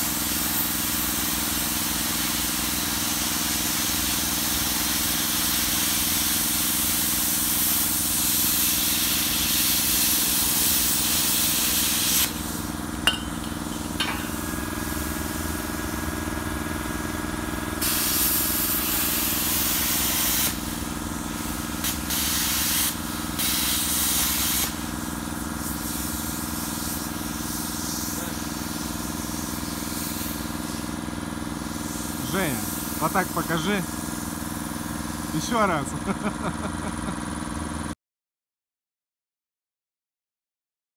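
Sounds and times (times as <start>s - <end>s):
plasma cutter torch hissing: 0.0s - 16.0s, 17.8s - 36.1s
low machine hum: 12.4s - 17.8s, 35.2s - 38.0s.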